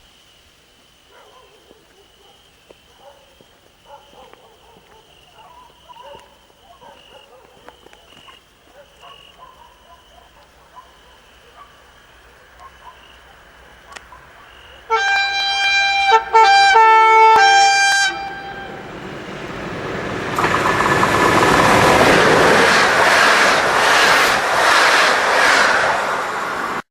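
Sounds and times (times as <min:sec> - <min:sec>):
train horn blasts: 0:14.9 - 0:19.0
train wheels rumbling on rails: 0:18.8 - 0:26.8.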